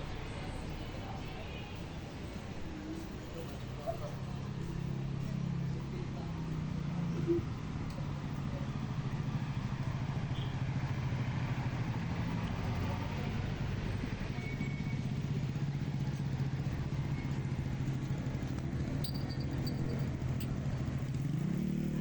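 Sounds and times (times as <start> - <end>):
city street noise: 0.0 - 22.0
vehicle engine running: 2.1 - 22.0.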